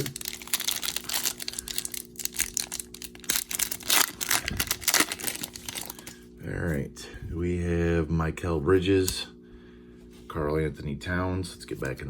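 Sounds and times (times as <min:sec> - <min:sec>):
plastic packaging crinkling: 0:00.0 - 0:06.2.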